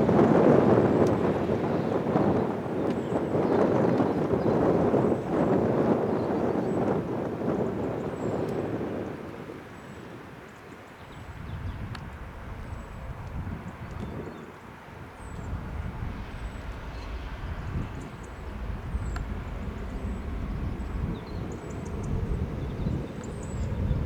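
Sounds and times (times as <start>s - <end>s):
distant jet rumble: 11.2s - 24.0s.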